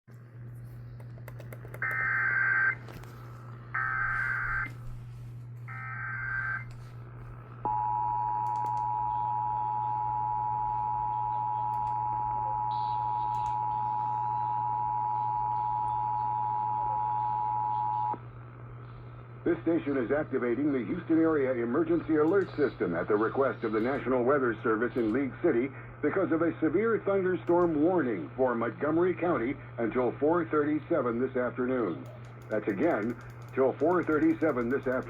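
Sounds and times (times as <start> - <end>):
steady low hum: 0.1 - 35.0
digital data bursts: 32.5 - 35.0.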